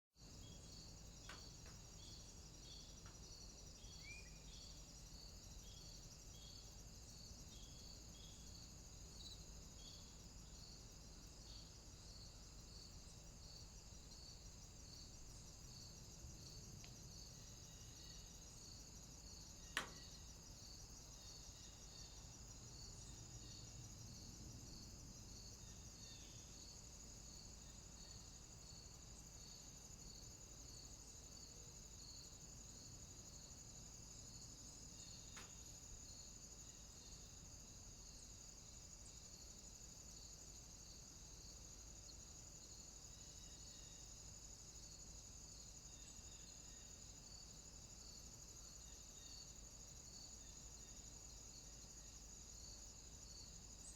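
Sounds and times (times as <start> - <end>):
insect chirping: 0.2 - 53.9.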